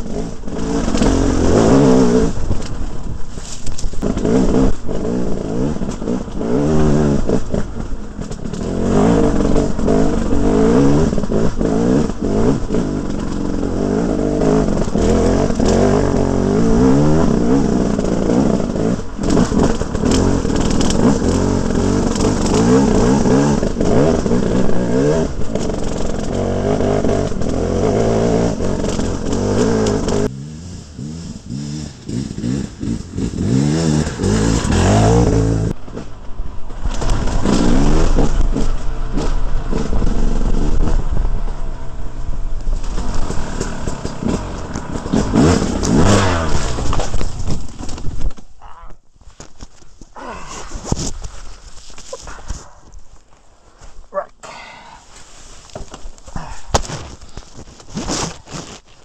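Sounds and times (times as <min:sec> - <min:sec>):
two-stroke engine revving: 0:00.0 - 0:02.5, 0:04.0 - 0:35.8, 0:36.9 - 0:47.9.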